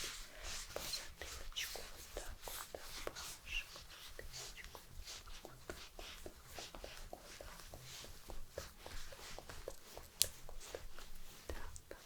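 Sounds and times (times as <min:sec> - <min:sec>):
soft rubbing: 0:00.0 - 0:12.0
light ticks and taps: 0:04.2 - 0:12.0.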